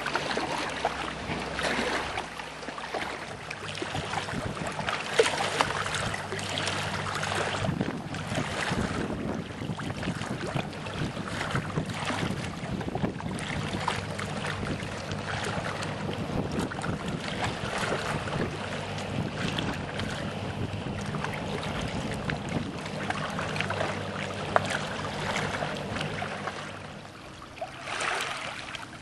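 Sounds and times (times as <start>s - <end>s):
low steady hum: 0.0s - 29.0s
water splashing around boat hull: 0.0s - 29.0s
wind buffeting microphone: 3.6s - 26.9s.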